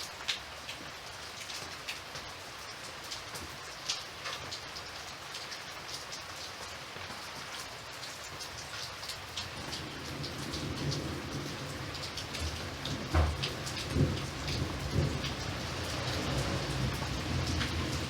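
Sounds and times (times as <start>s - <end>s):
steady rain with ticking drops: 0.0s - 18.0s
low thunder rumble: 9.6s - 18.0s.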